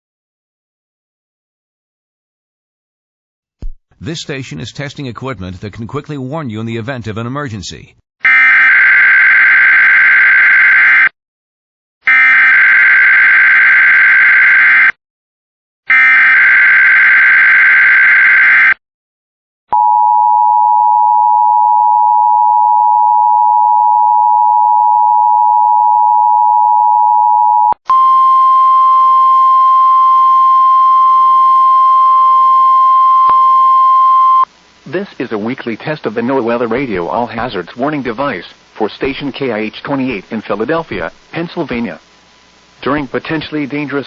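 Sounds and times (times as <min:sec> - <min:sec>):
radio hiss: 0:34.5 - 0:44.0.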